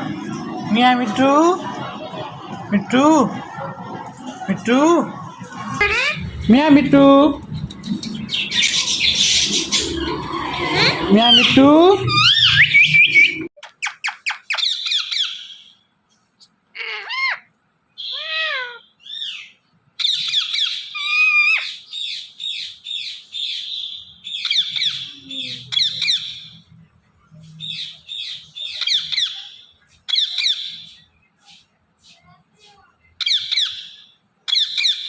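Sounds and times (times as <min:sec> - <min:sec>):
parakeet chattering and calling: 0:05.6 - 0:06.5, 0:07.9 - 0:15.8, 0:16.8 - 0:26.7, 0:27.5 - 0:35.0.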